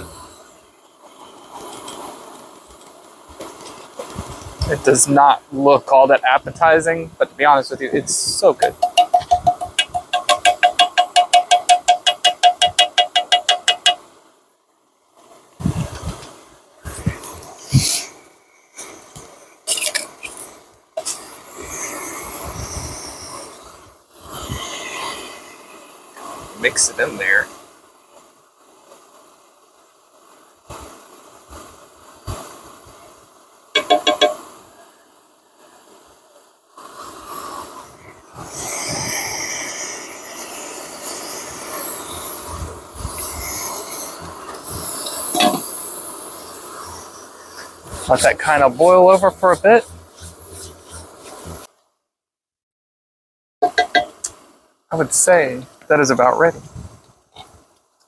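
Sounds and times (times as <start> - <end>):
camp stove burner hissing: 0.0 - 14.0, 15.5 - 51.7
metal pot clinks and clatters: 8.8 - 14.0.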